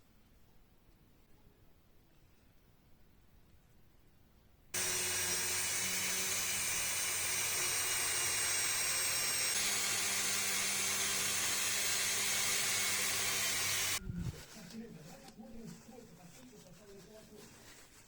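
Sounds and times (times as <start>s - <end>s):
rotary tool high-pitched whine: 4.8s - 14.0s.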